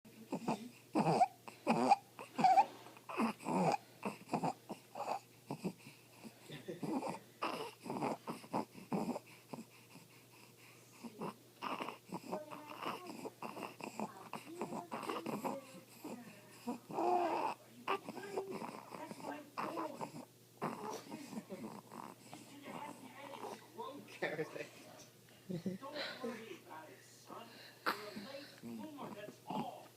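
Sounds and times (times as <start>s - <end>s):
infant noisy stridor breathing: 0.1s - 23.9s, 25.9s - 29.8s
infant fussy crying: 0.3s - 10.0s, 11.0s - 23.6s.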